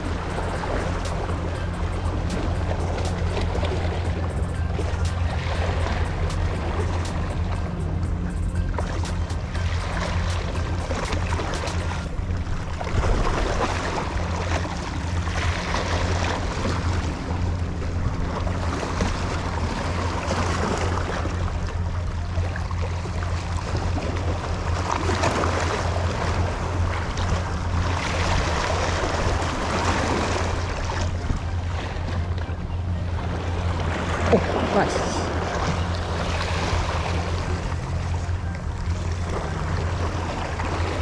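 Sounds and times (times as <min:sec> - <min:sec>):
sea waves washing against rocks: 0:00.0 - 0:21.1
low hum: 0:00.0 - 0:41.0.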